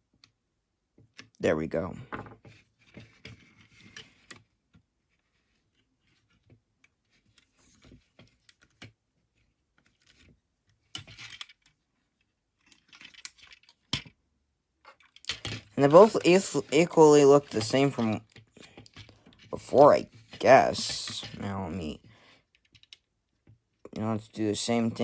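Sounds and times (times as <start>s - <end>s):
plastic toy parts clicking: 12.6s - 14.1s, 14.9s - 19.9s, 22.5s - 23.1s.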